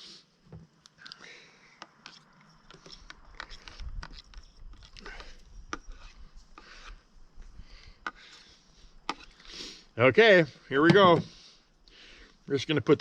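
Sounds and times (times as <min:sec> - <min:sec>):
drink stirred in a cup: 0:01.9 - 0:06.2
soft scraping: 0:02.0 - 0:07.0.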